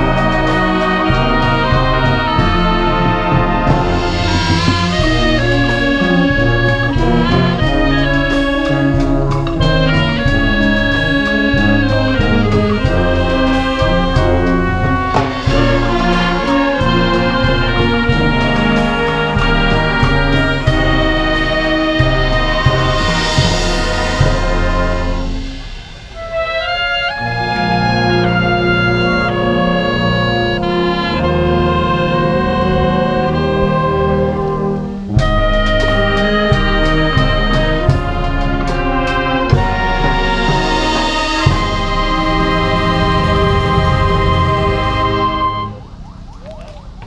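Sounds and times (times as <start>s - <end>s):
brass band playing: 0.0s - 47.0s.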